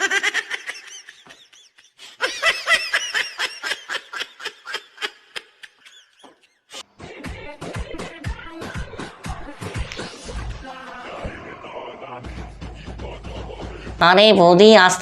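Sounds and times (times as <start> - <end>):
person laughing: 0.0 - 6.8
music with a beat: 7.0 - 11.0.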